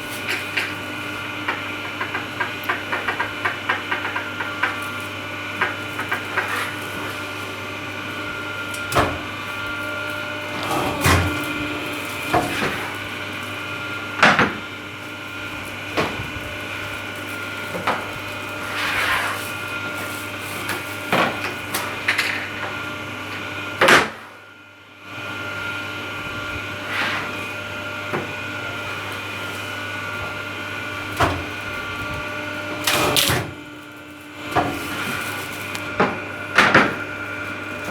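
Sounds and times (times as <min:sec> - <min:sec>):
hydraulic power pack hum: 0:00.0 - 0:20.4, 0:25.3 - 0:37.9.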